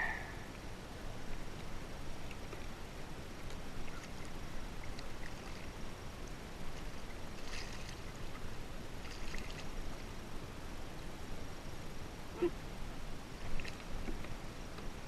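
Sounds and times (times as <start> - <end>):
water lapping against hull: 1.3 - 10.1, 13.3 - 15.0.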